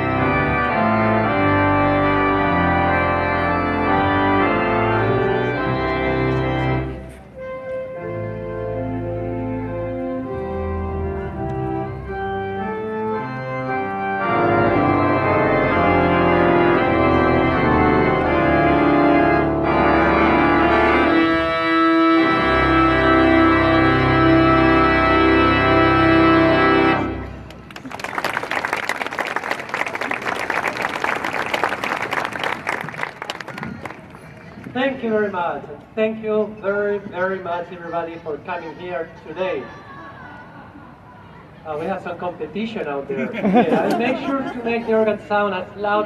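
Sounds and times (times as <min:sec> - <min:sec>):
pipe organ chords: 0:00.0 - 0:27.8
audience applause: 0:27.5 - 0:34.5.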